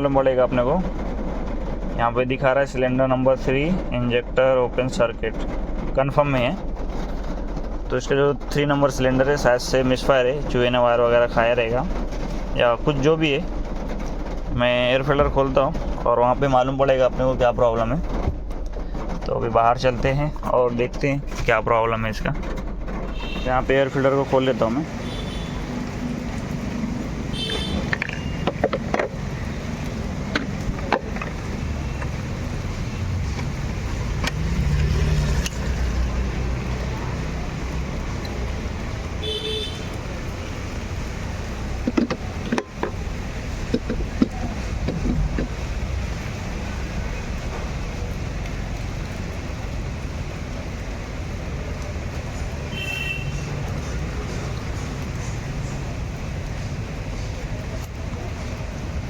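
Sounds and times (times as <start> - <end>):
vehicle engine rumble: 0.0 - 59.0
sharp clicks and knocks: 3.8 - 50.0.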